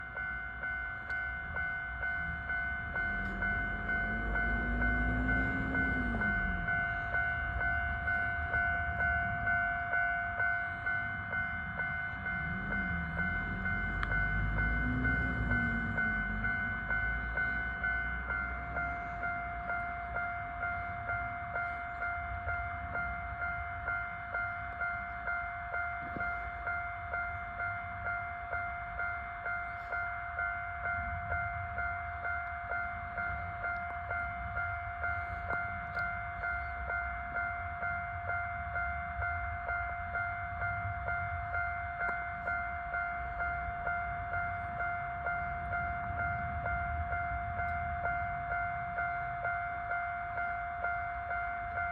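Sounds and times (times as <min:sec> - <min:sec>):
level crossing warning bell: 0:00.0 - 0:51.9.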